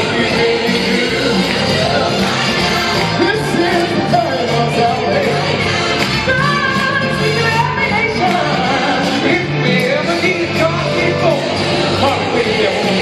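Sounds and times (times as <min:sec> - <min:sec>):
gospel band playing: 0:00.0 - 0:13.0.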